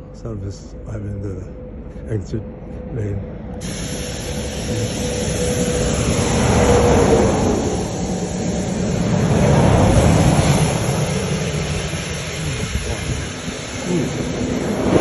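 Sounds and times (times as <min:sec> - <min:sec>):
highway traffic roar: 0:00.0 - 0:15.0
vehicles rushing past: 0:05.0 - 0:15.0.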